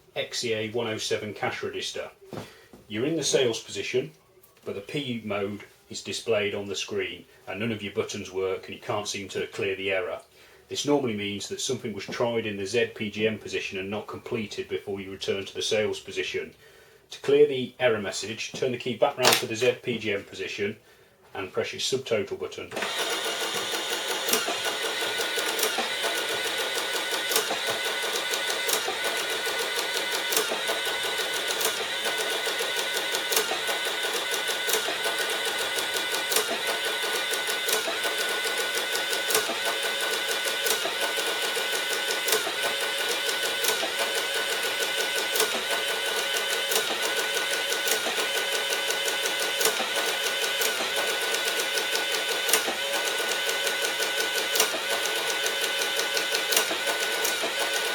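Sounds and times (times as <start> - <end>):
receipt printer printing: 22.7 - 57.9.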